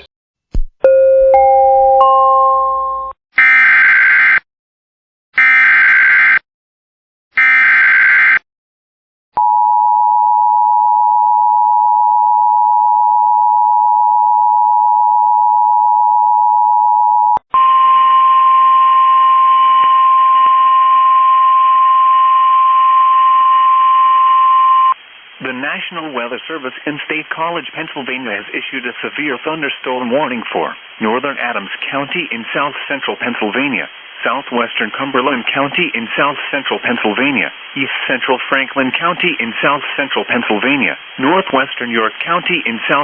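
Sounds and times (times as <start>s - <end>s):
radio hiss: 25.0s - 43.0s.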